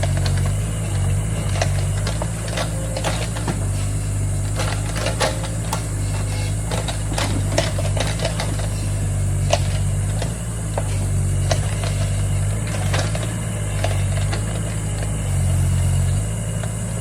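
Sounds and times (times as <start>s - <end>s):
machine clicks and clanks: 0.0s - 15.5s
excavator engine running: 0.0s - 17.0s.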